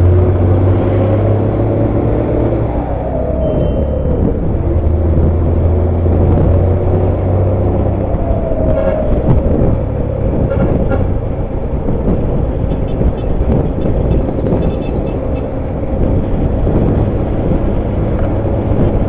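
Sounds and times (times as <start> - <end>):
bus diesel engine drone: 0.0 - 19.0
whining tone: 2.3 - 5.3.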